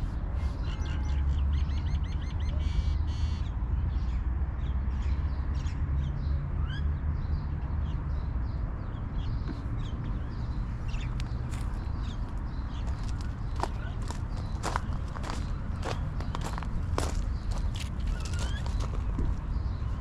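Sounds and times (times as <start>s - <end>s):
small birds chirping: 0.1s - 20.0s
steady low rumble: 9.6s - 20.0s.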